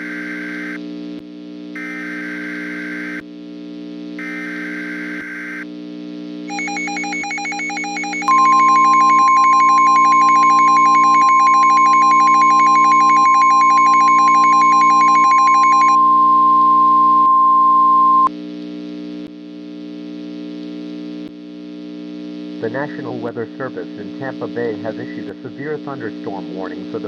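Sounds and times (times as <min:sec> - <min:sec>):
rapid two-tone beeping: 0:06.5 - 0:16.0
loud steady alarm tone: 0:06.5 - 0:18.3.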